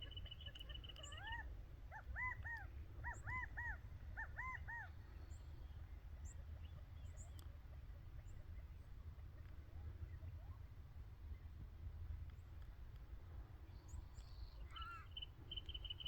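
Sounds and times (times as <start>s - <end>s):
faint high bird chips: 14.2s - 16.0s
bird mewing call phrases: 14.6s - 16.0s.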